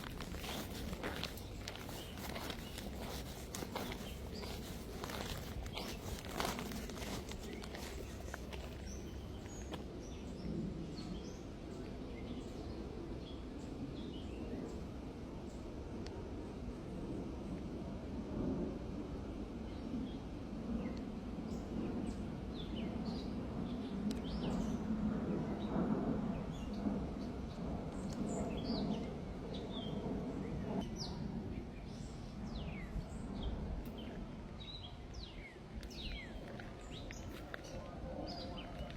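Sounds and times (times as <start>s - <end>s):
birds chirping: 0.0s - 11.5s
low background rumble: 0.0s - 18.9s
low outdoor rumble: 0.0s - 38.9s.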